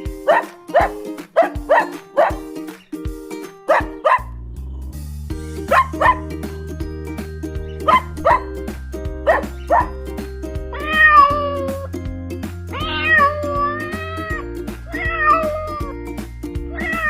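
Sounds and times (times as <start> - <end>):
background music with steady beat: 0.0 - 17.0
cat meowing: 10.8 - 11.9, 12.7 - 15.9, 16.7 - 17.0.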